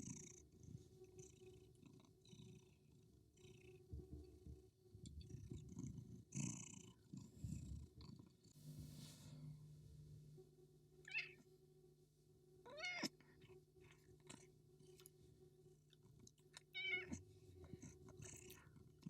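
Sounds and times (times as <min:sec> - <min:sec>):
cat meowing: 0:11.1 - 0:11.4, 0:12.7 - 0:13.1, 0:16.7 - 0:17.2.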